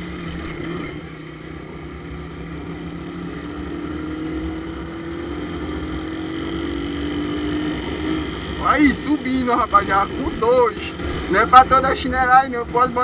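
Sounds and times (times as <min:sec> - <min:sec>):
loud motorcycle engine running: 0:00.0 - 0:13.0.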